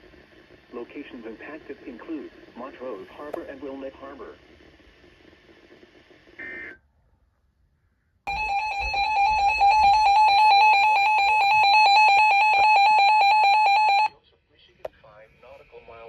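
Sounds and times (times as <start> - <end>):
short high electronic tone: 8.3 - 13.1
rapid electronic alert beeping: 8.3 - 14.1.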